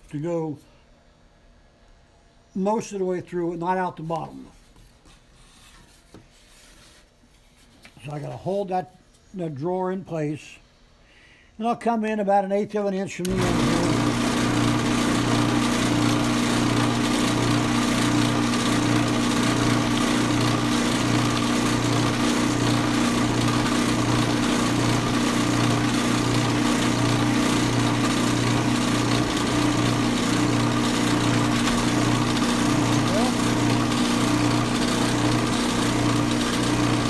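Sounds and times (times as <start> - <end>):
drill press motor hum: 13.2 - 37.0.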